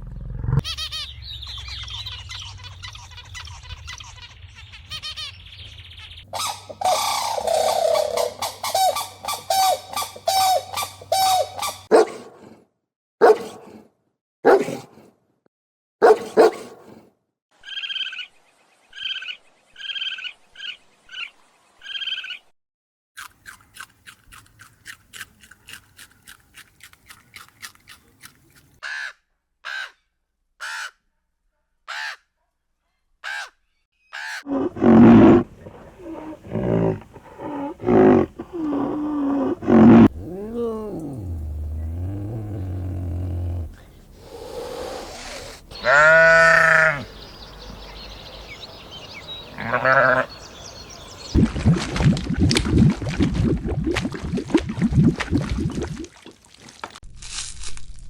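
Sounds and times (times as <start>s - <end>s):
low growling and roaring: 0.0s - 0.6s, 34.5s - 47.2s
repeated pitched animal calls: 6.3s - 12.0s, 33.2s - 47.2s, 49.5s - 50.4s
short animal calls: 34.2s - 47.1s.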